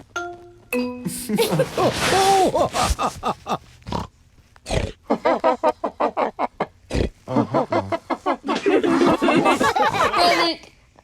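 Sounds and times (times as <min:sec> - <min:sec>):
cartoon pigs grunting and snorting: 0:03.8 - 0:05.0.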